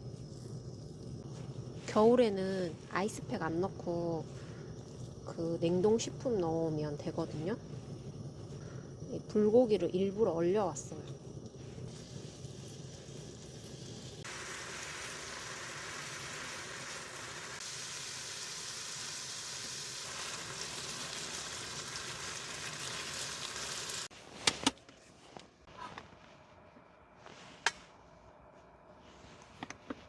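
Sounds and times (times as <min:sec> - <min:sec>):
meat sizzling in a pan: 0:11.6 - 0:24.1.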